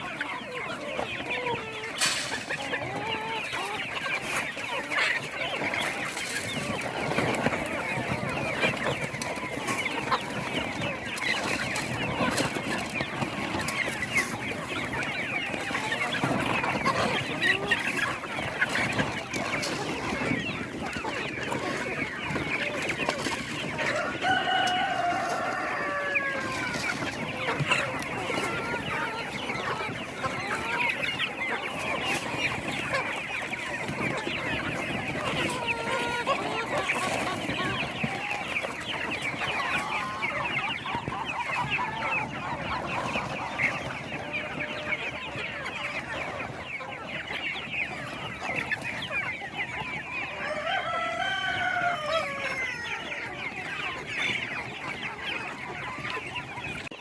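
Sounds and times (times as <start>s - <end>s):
chickens clucking: 0.0s - 57.0s
rooster crowing: 23.9s - 26.8s, 50.3s - 53.2s.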